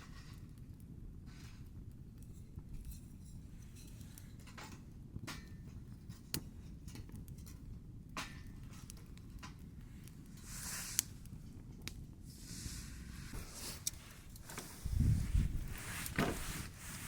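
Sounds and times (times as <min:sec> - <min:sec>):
low steady rumble: 0:12.2 - 0:17.0.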